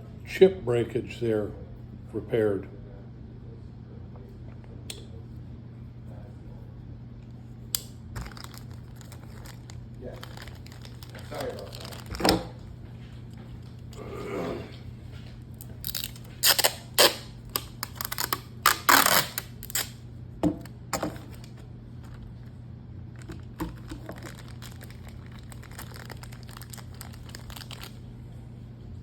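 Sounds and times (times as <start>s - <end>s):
steady low hum: 0.0s - 29.0s
packaging crinkling and rustling: 8.1s - 13.9s, 15.6s - 20.0s, 20.6s - 28.1s.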